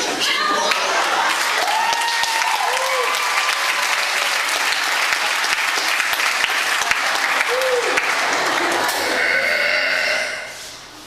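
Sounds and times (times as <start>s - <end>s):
crowd calls: 0.0s - 9.7s
audience applauding: 0.5s - 9.2s.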